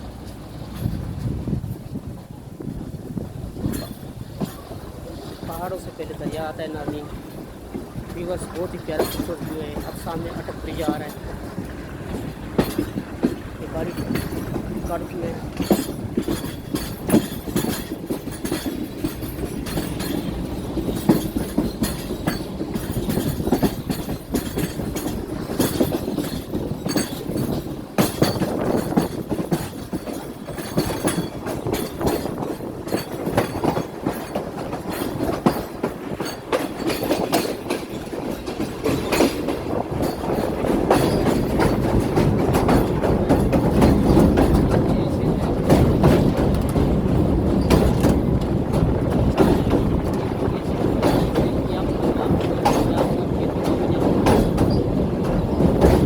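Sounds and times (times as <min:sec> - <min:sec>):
train rumble: 0:00.0 - 0:56.0
train wheels clattering on rails: 0:00.0 - 0:56.0.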